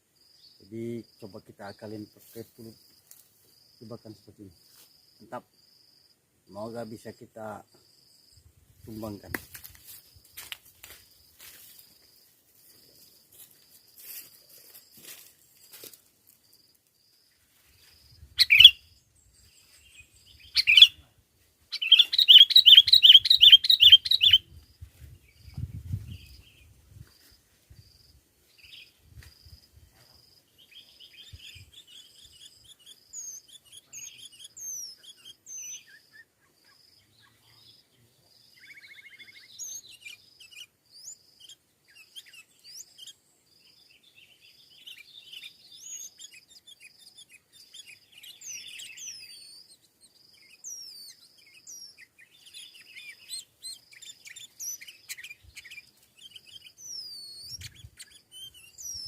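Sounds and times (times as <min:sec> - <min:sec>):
bulbuls calling and chirping: 0:18.4 - 0:21.0, 0:21.6 - 0:24.5, 0:30.6 - 0:43.2, 0:44.2 - 0:59.0.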